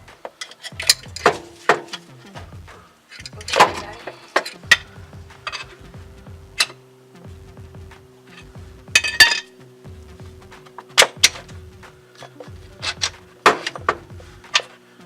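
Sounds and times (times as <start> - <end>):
quiet background music: 0.0 - 15.0
hand tools clanking on metal: 0.2 - 2.1, 3.1 - 5.8, 8.3 - 9.5, 10.6 - 14.8.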